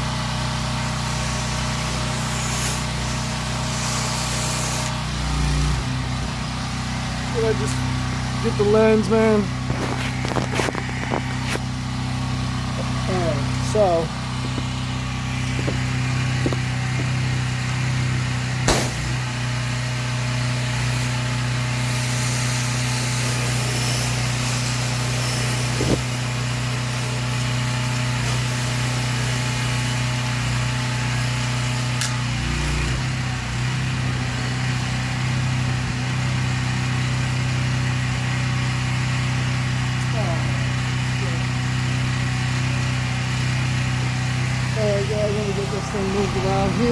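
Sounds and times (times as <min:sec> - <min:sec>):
pressure washer engine running: 0:00.0 - 0:46.9.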